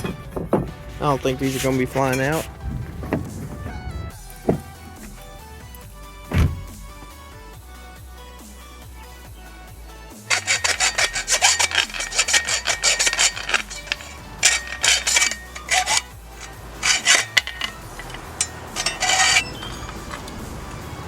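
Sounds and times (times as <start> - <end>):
hand tool rasping on metal: 0.0 - 3.6, 10.3 - 20.4.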